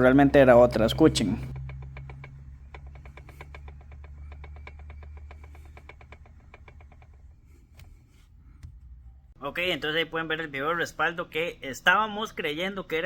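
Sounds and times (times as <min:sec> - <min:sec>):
low hum: 0:00.0 - 0:09.4
steering column clicking: 0:00.0 - 0:09.4.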